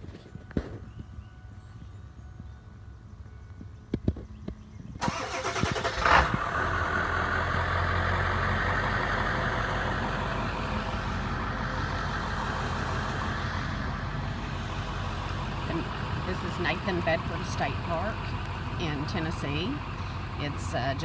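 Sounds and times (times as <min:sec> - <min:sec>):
car engine starting: 0:05.0 - 0:21.0.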